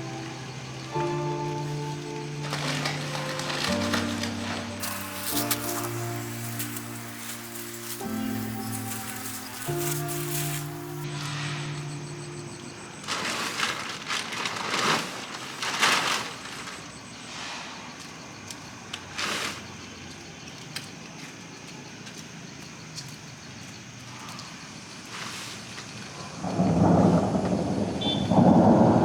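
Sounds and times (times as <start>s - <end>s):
rushing noise: 0.0s - 14.2s
rain hissing: 0.0s - 17.9s, 25.4s - 29.0s.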